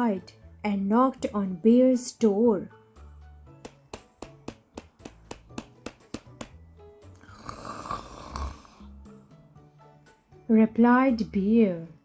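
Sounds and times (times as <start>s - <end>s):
soft background music: 0.0s - 12.0s
knocking on a door: 3.7s - 6.6s
bear snoring: 7.2s - 9.1s.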